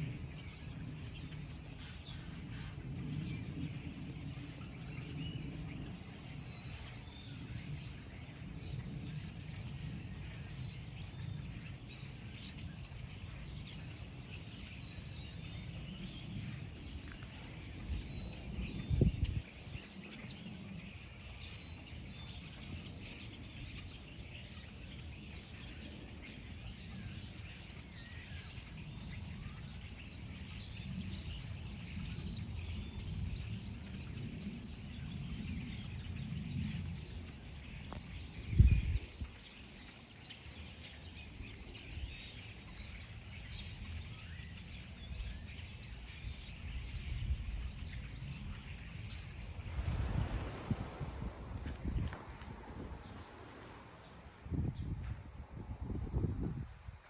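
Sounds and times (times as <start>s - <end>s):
small birds chirping: 41.0s - 54.6s
steady low rumble: 49.0s - 54.8s.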